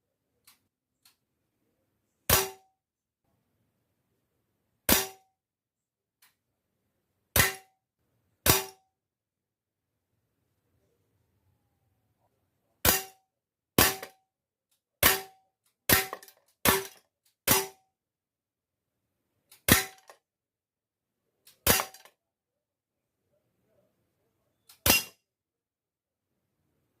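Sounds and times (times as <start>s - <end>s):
airsoft pistol shots: 2.3s - 2.6s, 4.9s - 5.2s.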